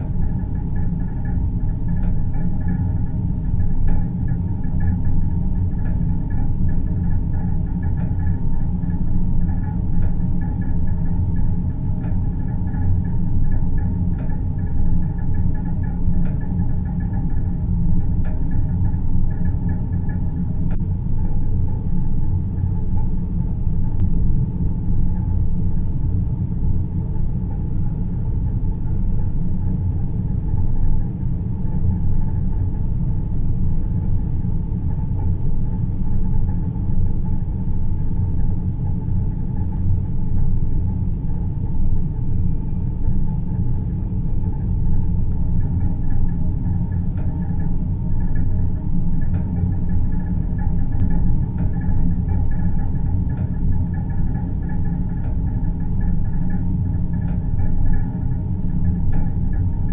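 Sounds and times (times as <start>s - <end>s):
deep rumbling synth drone: 0.0s - 59.9s.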